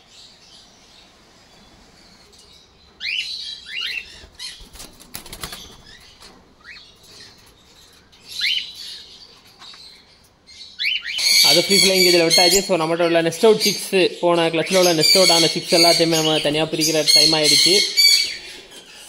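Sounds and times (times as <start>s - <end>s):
wings flapping: 4.2s - 6.6s.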